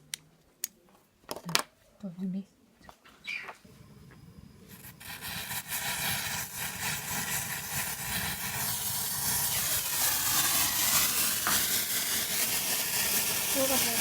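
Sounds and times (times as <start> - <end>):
sizzling hiss: 3.7 - 14.0.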